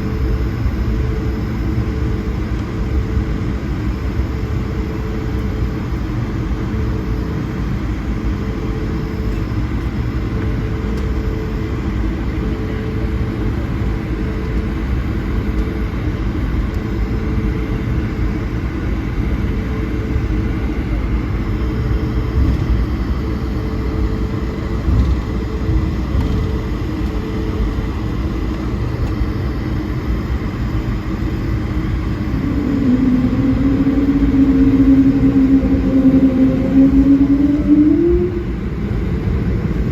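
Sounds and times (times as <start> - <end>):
faint pulsing hum: 0.0 - 39.9
jet engine rumble in cabin: 0.0 - 39.9
low rising hum: 16.8 - 39.9.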